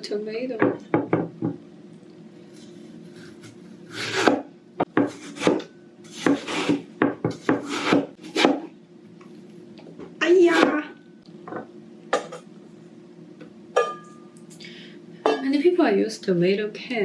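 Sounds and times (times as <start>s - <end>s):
knife cutting tomato on board: 2.6s - 8.7s.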